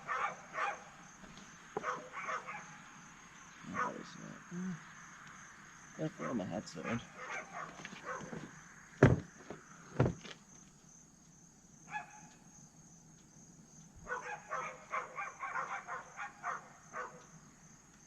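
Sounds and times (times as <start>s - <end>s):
single knock: 9.0s - 9.3s.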